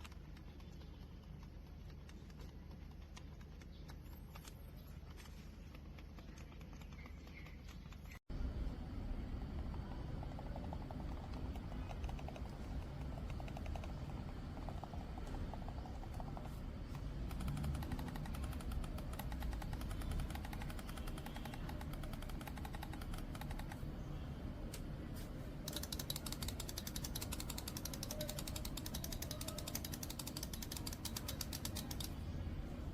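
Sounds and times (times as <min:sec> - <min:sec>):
low steady hum: 0:00.0 - 0:32.9
mouse switches clicking: 0:10.5 - 0:23.8, 0:25.6 - 0:32.3.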